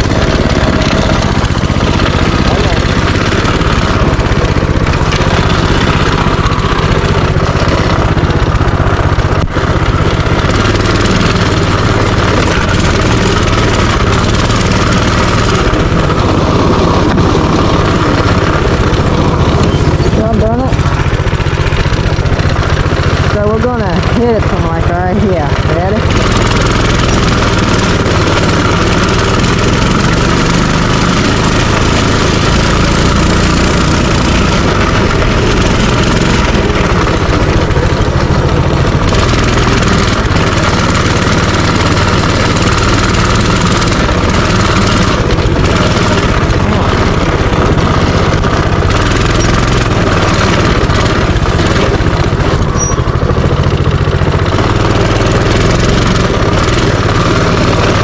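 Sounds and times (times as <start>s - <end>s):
small engine running: 0.0s - 58.0s.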